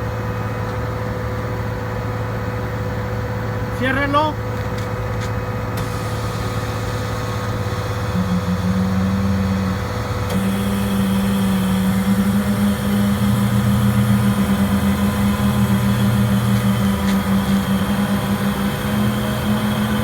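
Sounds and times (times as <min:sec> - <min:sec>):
diesel engine running: 0:00.0 - 0:20.0
low humming tone: 0:05.9 - 0:20.0.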